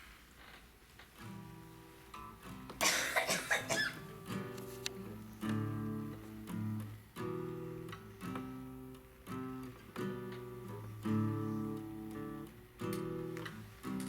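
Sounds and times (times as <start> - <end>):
acoustic guitar strumming: 1.2 - 14.0
loud cough: 2.8 - 4.0.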